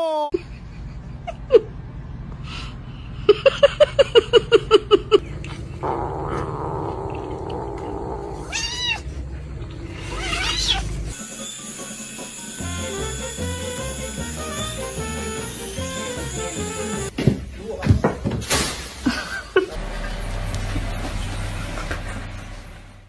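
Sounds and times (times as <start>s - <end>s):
cat meowing: 6.3s - 9.1s, 10.0s - 11.2s.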